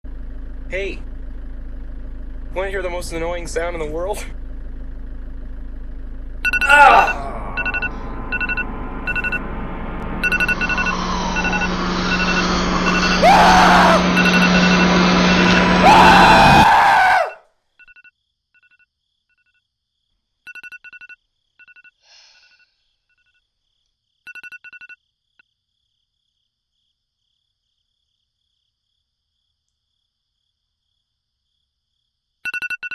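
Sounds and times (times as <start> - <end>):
sliding tones: 6.5 - 17.4
loud rushing noise: 6.8 - 17.4
two-pitch electronic beeps: 7.5 - 13.2.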